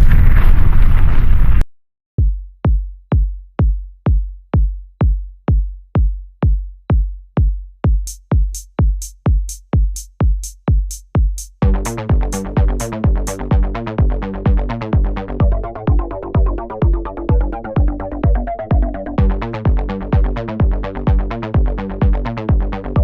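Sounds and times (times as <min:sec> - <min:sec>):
drum machine kick drum: 0:02.2 - 0:23.0
hi-hats: 0:07.8 - 0:14.8
synth pattern: 0:11.6 - 0:23.0.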